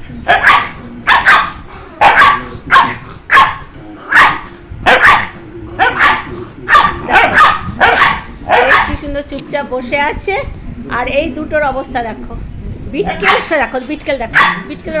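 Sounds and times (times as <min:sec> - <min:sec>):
dog barking: 0:00.3 - 0:09.0, 0:13.1 - 0:13.6, 0:14.3 - 0:14.8.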